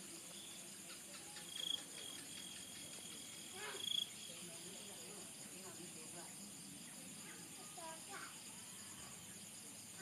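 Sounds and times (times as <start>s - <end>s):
insects chirring: 0.0s - 10.0s.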